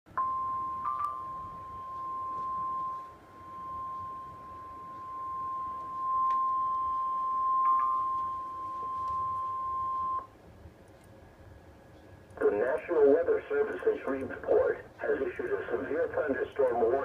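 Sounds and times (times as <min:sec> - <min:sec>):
radio warning alarm tone: 0:00.1 - 0:10.3.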